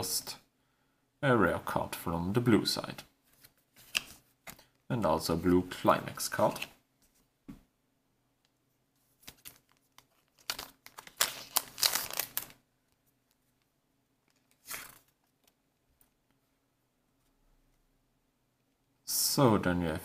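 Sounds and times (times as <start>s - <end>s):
foil wrapper crinkling: 9.2s - 12.6s.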